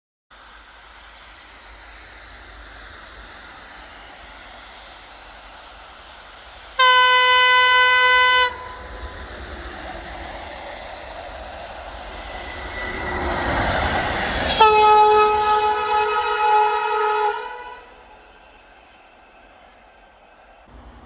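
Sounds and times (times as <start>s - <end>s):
train running noise: 0.3s - 21.0s
train air horn blast: 6.8s - 9.2s, 14.4s - 18.3s.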